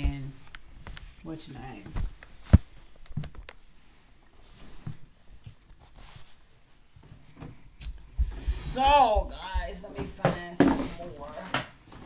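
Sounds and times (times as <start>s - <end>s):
items knocking in drawer: 8.8s - 12.0s.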